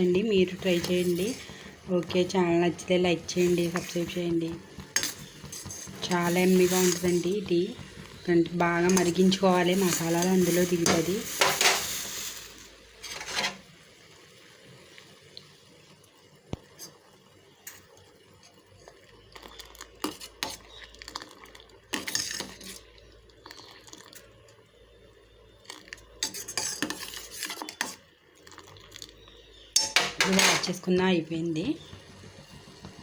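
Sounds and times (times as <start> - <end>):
metal utensils scraping a pan: 0.6 - 2.2, 3.3 - 7.4, 8.7 - 13.6, 21.9 - 22.8, 26.2 - 28.0, 29.8 - 30.8.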